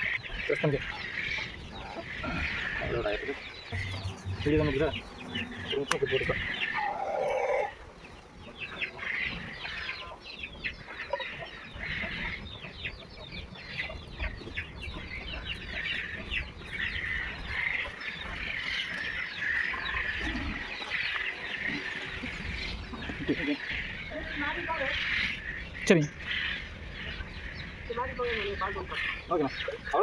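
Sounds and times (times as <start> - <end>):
birds chirping: 0.0 - 30.0
low rumble: 1.6 - 7.3.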